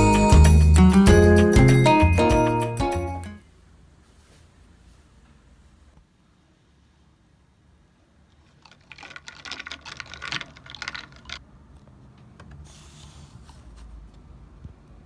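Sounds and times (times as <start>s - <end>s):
short soft hiss: 12.6s - 13.8s.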